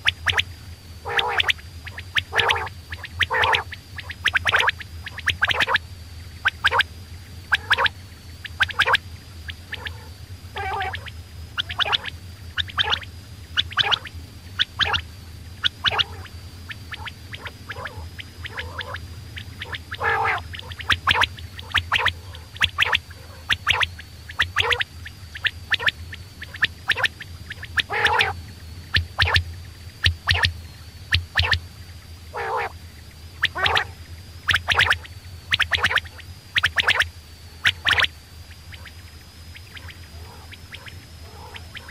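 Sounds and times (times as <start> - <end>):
faint high whine: 0.0 - 41.9
steady low hum: 0.0 - 41.9
quail calling: 1.0 - 5.8, 7.5 - 15.0, 15.6 - 29.4, 30.0 - 31.6, 32.3 - 32.8, 33.4 - 38.1, 39.6 - 41.9.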